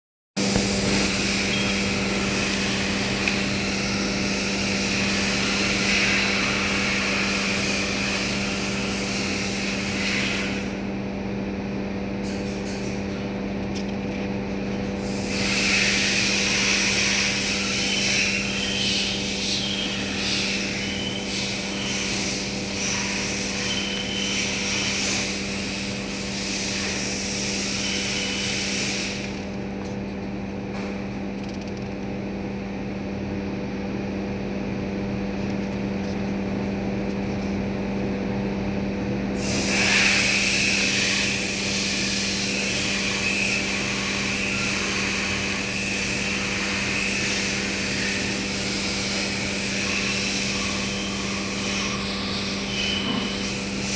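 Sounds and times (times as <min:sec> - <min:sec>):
mechanical hum: 0:00.4 - 0:53.9
loud air hissing: 0:00.5 - 0:10.8, 0:15.0 - 0:29.4, 0:39.4 - 0:53.9.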